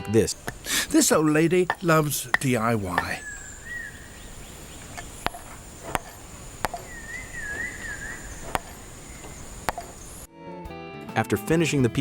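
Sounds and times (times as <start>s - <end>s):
sharp clicks: 4.8s - 10.3s
faint warbling whistle: 6.6s - 10.0s.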